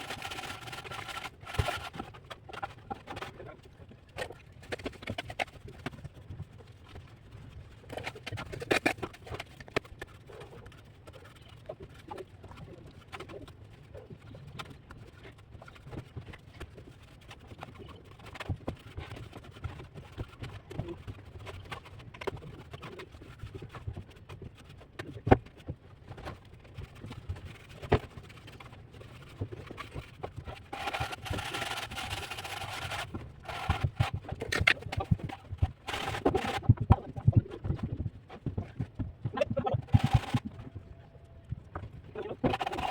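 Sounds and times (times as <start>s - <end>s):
hand tools scraping plaster: 0.0s - 3.3s, 27.0s - 37.6s, 38.8s - 40.5s, 42.2s - 42.9s.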